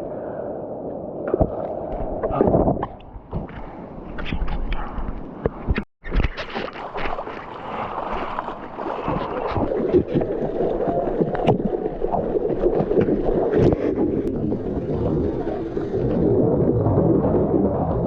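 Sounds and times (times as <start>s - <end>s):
ocean water splashing and rushing: 6.1s - 18.0s
wind on microphone: 8.9s - 18.0s.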